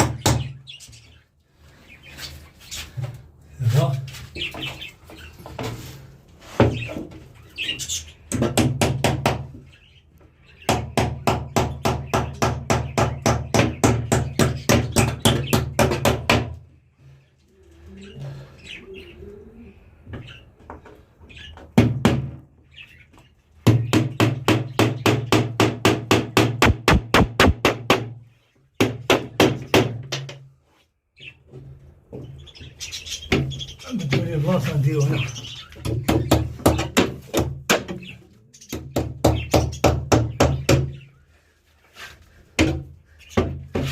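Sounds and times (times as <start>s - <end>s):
hammer driving a nail: 23.9s - 28.1s.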